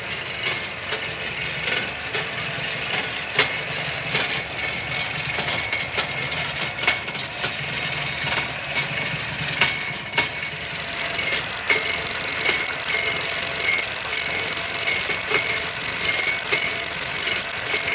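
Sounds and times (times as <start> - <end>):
machine rattling and clicking: 0.0 - 17.9
machine whining: 0.0 - 17.9.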